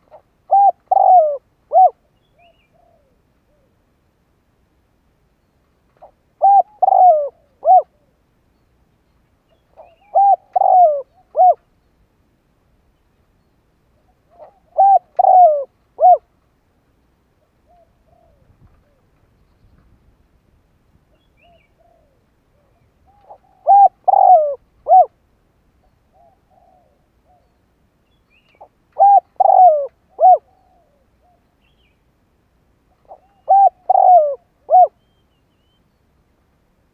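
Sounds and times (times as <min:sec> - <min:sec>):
dove cooing: 0:00.1 - 0:03.8, 0:06.0 - 0:08.2, 0:09.8 - 0:11.7, 0:14.0 - 0:16.3, 0:17.6 - 0:19.1, 0:21.4 - 0:25.2, 0:26.1 - 0:27.5, 0:28.6 - 0:31.5, 0:32.9 - 0:35.1
faint soft bird notes: 0:17.4 - 0:20.2.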